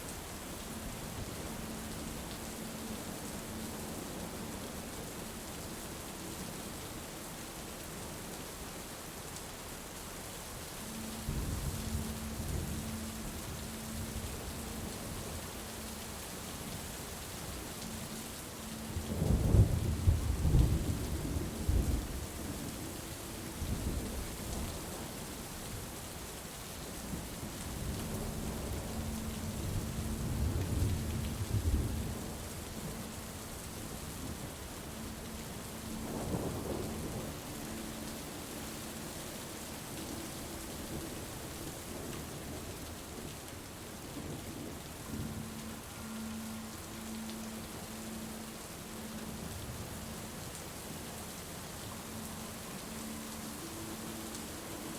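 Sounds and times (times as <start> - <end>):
steady rain falling: 0.0 - 54.9.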